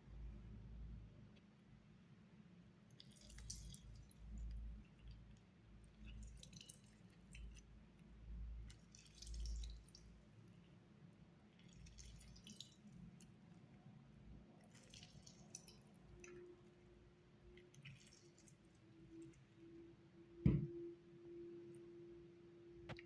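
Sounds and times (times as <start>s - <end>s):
wet squishing and dripping: 2.9s - 19.6s.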